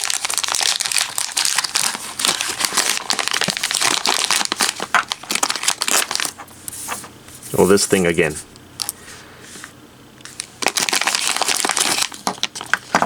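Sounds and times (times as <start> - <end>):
packaging crinkling: 0.0 - 7.1, 10.2 - 13.0.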